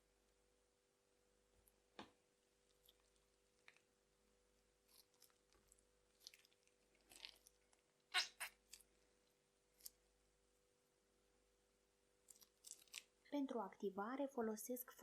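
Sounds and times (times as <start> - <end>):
slime squishing and crackling: 4.8 - 8.9, 12.3 - 13.2.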